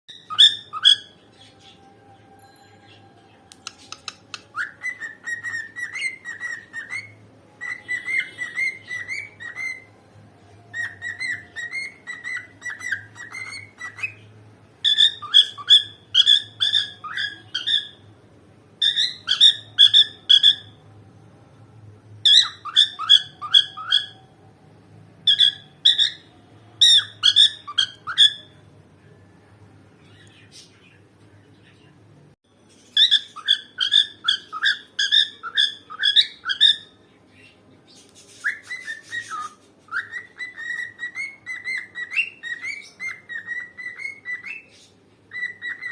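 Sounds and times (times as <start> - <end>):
cockatiel whistling: 0.1 - 1.2, 3.6 - 9.9, 10.7 - 14.2, 14.8 - 18.0, 18.8 - 20.8, 22.2 - 24.2, 25.2 - 28.6, 33.0 - 37.0, 38.3 - 45.9.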